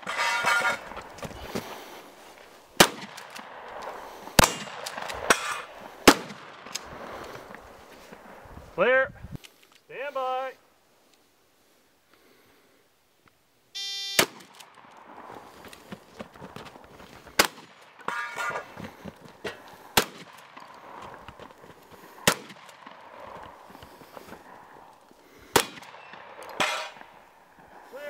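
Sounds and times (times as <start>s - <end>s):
handling and movement noise: 0.0s - 8.7s, 14.3s - 28.0s
shotgun blasts: 2.8s - 3.7s, 4.4s - 6.8s, 14.2s - 14.9s, 17.4s - 18.7s, 20.0s - 20.6s, 22.2s - 23.2s, 25.5s - 27.2s
shot timer beep: 13.8s - 14.2s.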